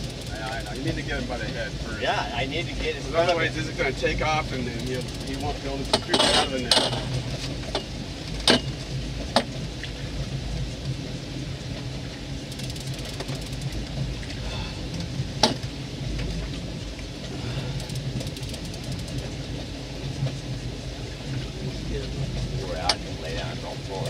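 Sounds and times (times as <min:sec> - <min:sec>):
boat engine running: 0:00.0 - 0:24.0.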